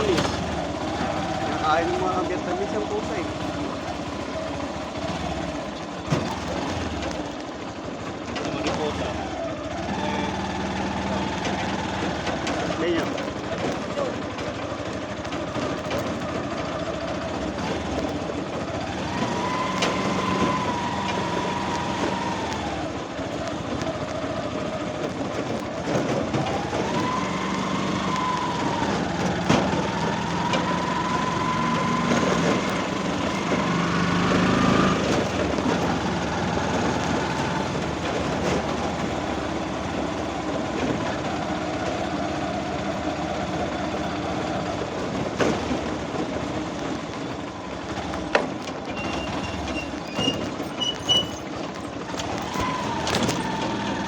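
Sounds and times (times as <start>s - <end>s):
vehicle engine running: 0.0s - 54.0s.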